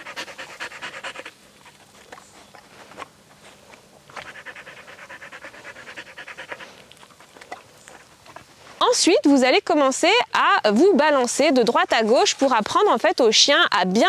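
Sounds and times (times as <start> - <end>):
dog panting: 0.0 - 8.7.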